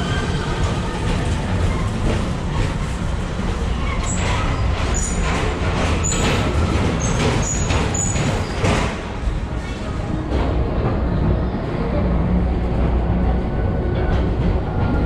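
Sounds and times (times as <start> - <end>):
ride car rumbling on track: 0.0 - 15.0.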